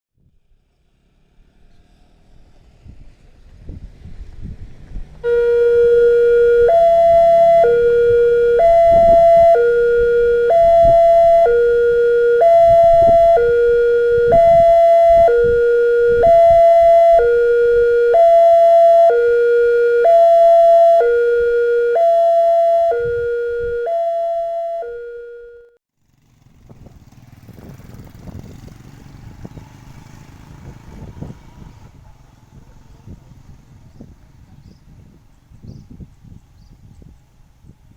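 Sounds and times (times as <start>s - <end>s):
level-crossing two-tone siren: 5.2s - 25.8s.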